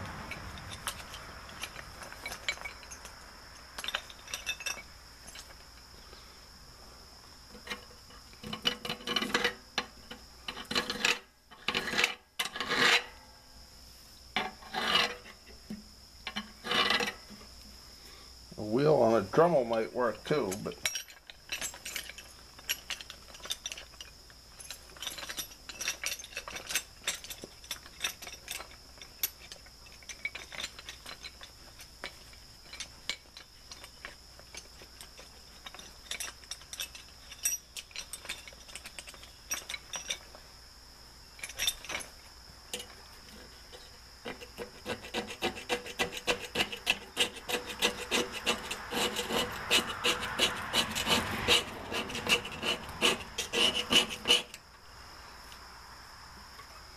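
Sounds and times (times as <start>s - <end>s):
screwdriver scraping metal channel: 44.3s - 54.6s.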